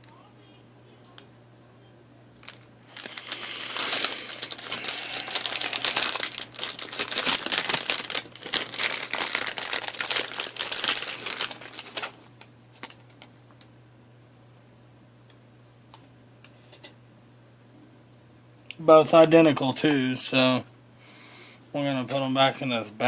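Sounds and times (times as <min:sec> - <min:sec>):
plastic bag crinkling: 0:02.4 - 0:13.3.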